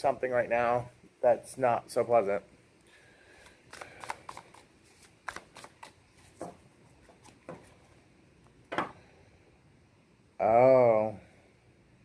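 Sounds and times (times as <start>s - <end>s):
cards shuffling and snapping: 3.4s - 6.4s.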